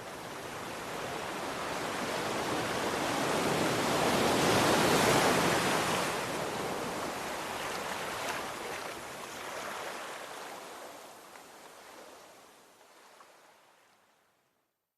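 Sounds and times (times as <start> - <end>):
sea waves washing ashore: 0.0 - 11.1.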